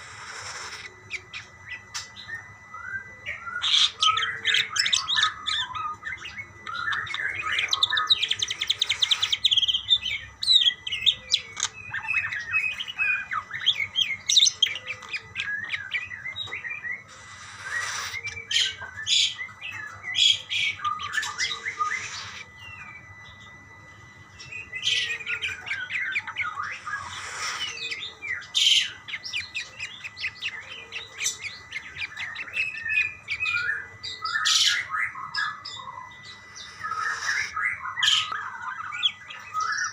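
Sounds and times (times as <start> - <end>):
budgerigars chirping and warbling: 0.0 - 23.4, 24.0 - 39.9
budgerigar squawks: 17.1 - 19.4, 36.6 - 38.4.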